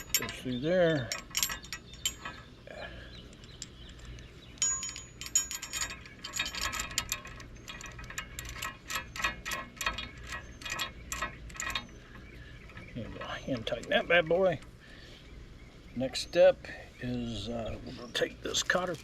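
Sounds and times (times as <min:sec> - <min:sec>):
ring of metal: 0:00.0 - 0:14.3
metal parts clinking: 0:00.0 - 0:14.8, 0:18.5 - 0:19.0.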